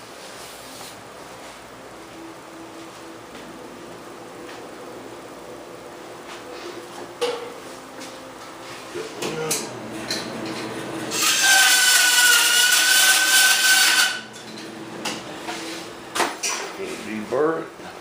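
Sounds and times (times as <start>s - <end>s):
power tool grinding metal: 10.0s - 14.3s.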